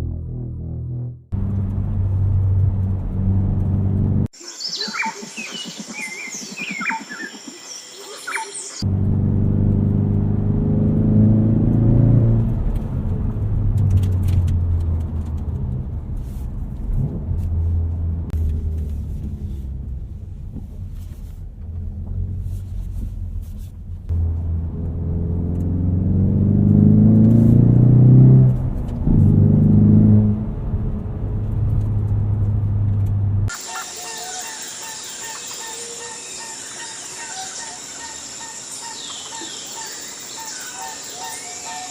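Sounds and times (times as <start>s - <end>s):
vehicle engine revving: 0.0s - 4.3s, 8.8s - 33.6s.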